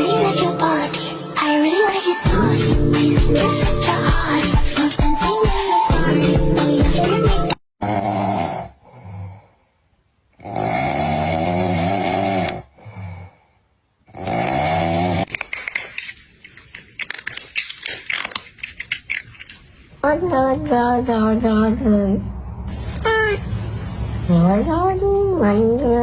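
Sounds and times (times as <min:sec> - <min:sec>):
crackly rustling: 0:15.3 - 0:20.1.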